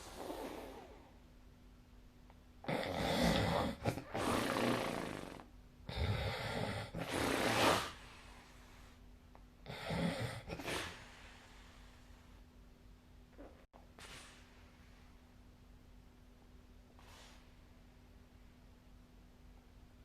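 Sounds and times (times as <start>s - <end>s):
person snoring: 0.0s - 1.1s, 2.6s - 8.0s, 9.6s - 11.1s.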